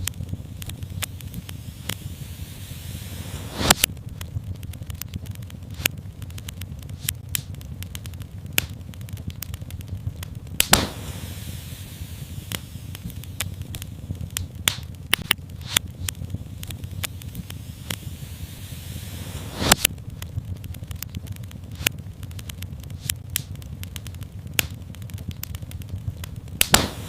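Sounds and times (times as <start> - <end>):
fireplace fire crackling: 0.0 - 27.0
low rumble of fire: 0.0 - 27.0
brief hiss: 1.0 - 3.9, 10.7 - 13.2, 17.2 - 19.9.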